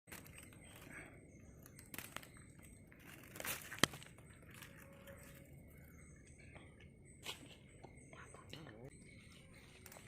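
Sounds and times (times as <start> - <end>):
rustling and crinkling: 0.1 - 6.0.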